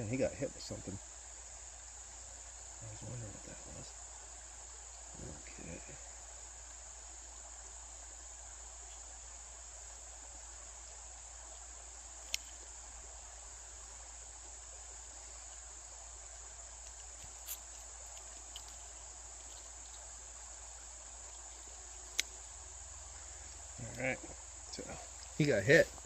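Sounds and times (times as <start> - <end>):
chorus of insects: 0.0 - 26.0
sharp clicks: 12.2 - 12.6.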